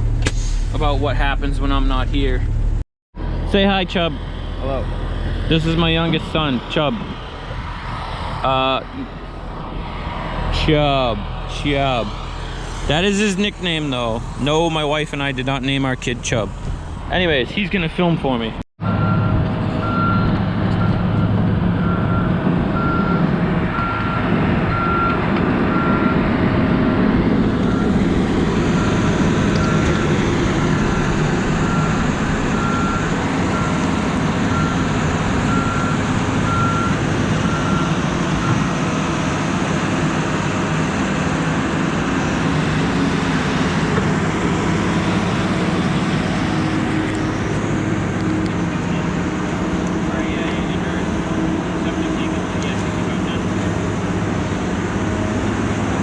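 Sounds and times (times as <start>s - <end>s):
diesel engine running: 0.0s - 56.0s
backup alarm beeping: 27.7s - 38.8s.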